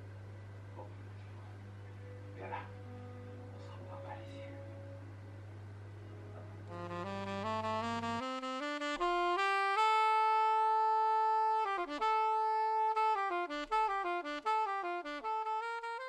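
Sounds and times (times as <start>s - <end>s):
solo wind instrument melody: 6.2s - 16.0s.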